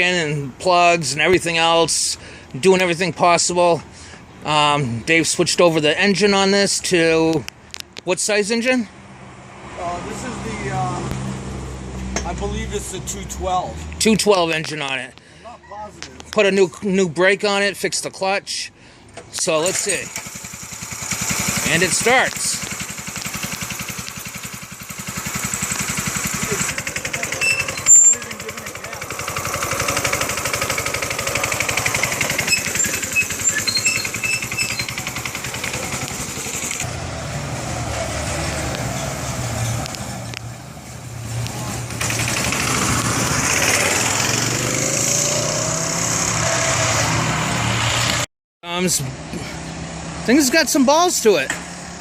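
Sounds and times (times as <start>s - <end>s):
minibike engine revving: 19.7s - 48.2s.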